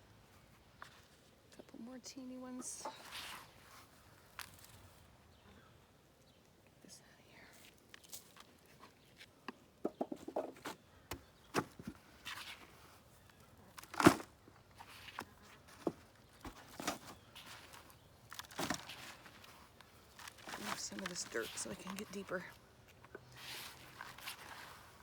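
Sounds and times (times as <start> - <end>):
hands rummaging through soil: 7.5 - 9.4, 10.2 - 25.0.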